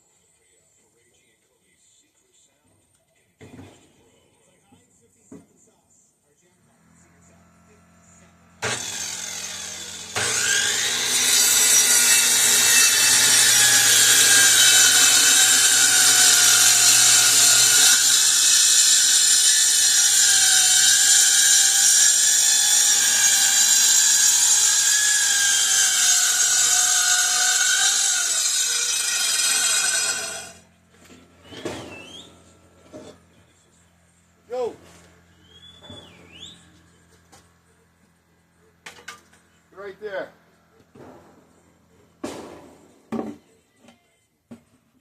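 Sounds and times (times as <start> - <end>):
power tool motor under load: 8.6 - 33.4.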